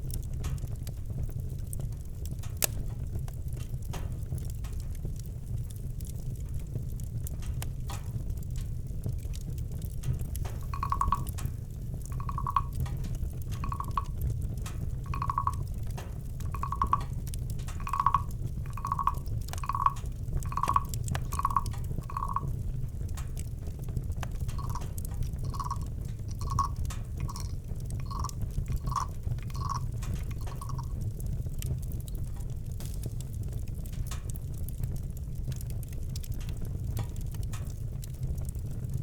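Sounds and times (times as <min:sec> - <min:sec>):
campfire crackling and popping: 0:00.0 - 0:39.0
low steady rumble: 0:10.0 - 0:33.9.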